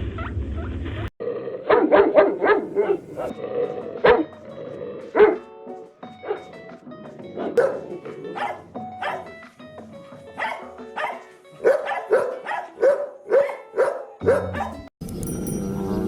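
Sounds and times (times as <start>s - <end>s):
dog barking: 1.7s - 3.4s, 4.0s - 4.3s, 5.1s - 5.5s, 6.2s - 6.6s, 7.4s - 9.4s, 10.1s - 14.9s.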